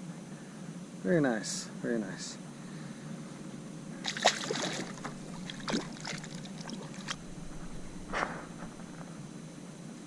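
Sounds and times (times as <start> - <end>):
water splashing around kayak: 4.0 - 8.9.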